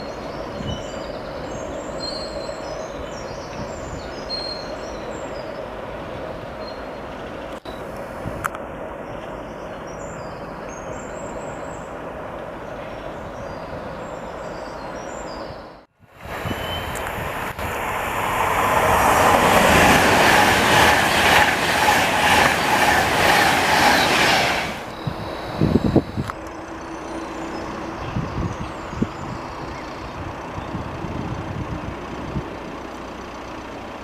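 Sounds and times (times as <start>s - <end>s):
train wheels clattering: 17.9s - 24.9s.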